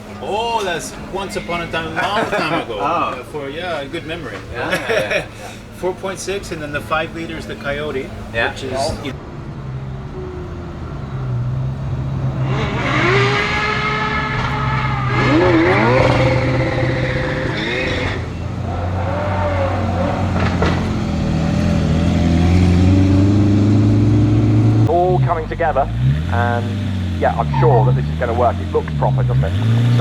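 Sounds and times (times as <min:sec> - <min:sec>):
car engine revving: 0:00.0 - 0:09.8, 0:10.4 - 0:30.0.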